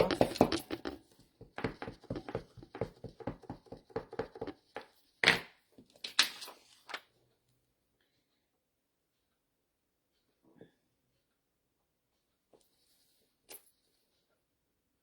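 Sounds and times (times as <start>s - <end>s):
rubber stamp tapping on ink pad: 0.0s - 4.6s.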